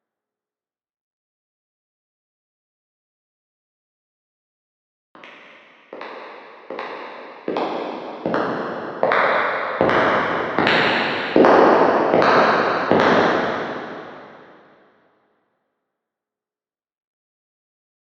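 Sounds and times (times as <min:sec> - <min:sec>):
echoing footsteps: 0:05.2 - 0:14.6.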